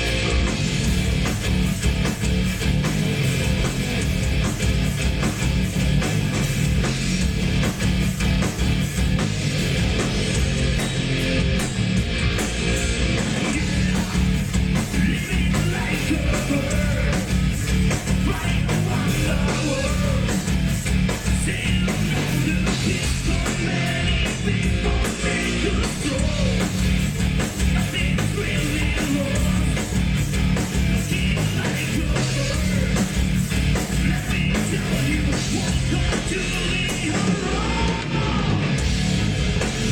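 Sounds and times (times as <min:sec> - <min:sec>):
heavy metal song: 0:00.0 - 0:39.9
person singing: 0:13.4 - 0:17.4.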